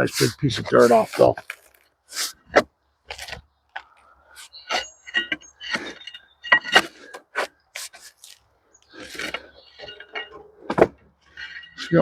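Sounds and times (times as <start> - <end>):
high-pitched squeals: 8.9 - 10.8.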